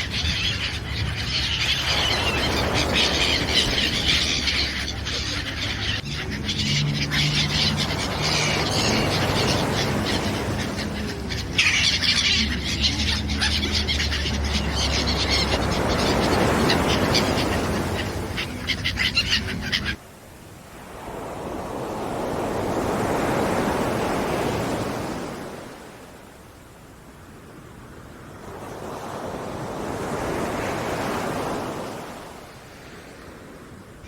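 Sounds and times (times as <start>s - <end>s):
birds calling and squawking: 0.0s - 20.0s.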